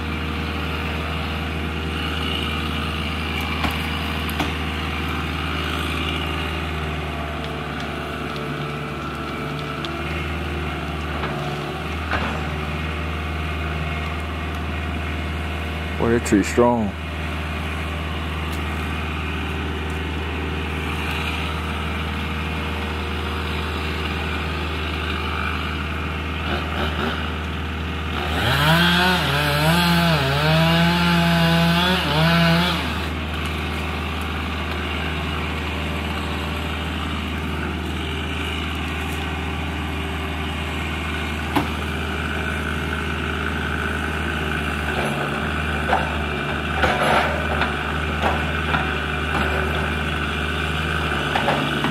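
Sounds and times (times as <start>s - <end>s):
engine humming low: 0.0s - 51.9s
engine revving up and down: 28.0s - 33.7s.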